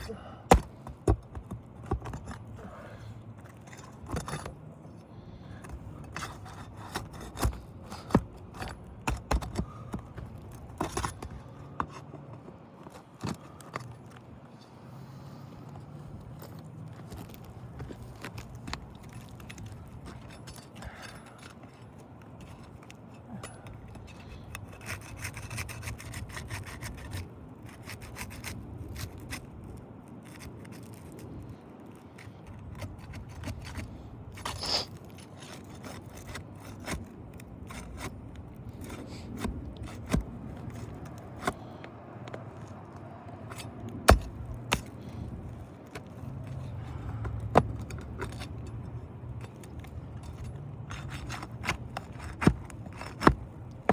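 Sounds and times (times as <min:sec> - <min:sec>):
flat bar scraping under shingles: 0:00.0 - 0:31.6, 0:32.2 - 0:53.9
squeaky scrape: 0:33.4 - 0:37.0.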